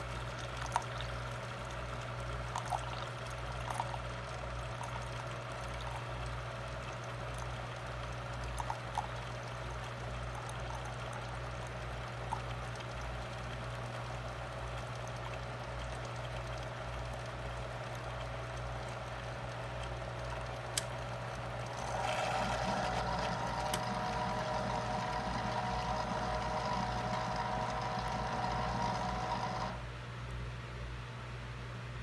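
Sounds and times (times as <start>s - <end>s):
coffee maker humming: 0.0s - 29.9s
coffee maker click: 21.8s - 29.8s.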